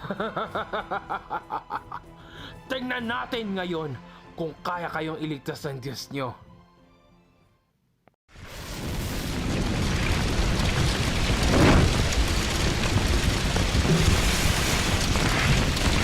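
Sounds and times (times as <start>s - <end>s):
large fire crackling: 8.3s - 16.0s.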